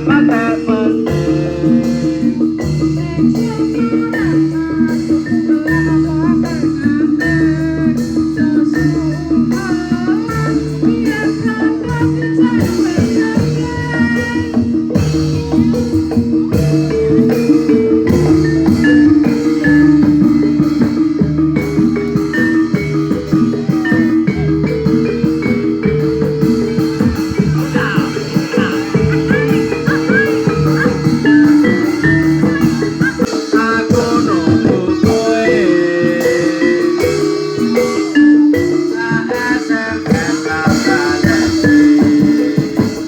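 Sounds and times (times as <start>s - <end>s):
drums: 0.0s - 43.0s
struck metal keys melody: 14.8s - 43.0s.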